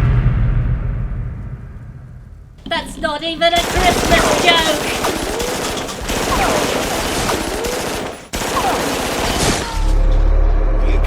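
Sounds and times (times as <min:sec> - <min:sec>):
rapid machine-gun fire: 0:02.6 - 0:10.2.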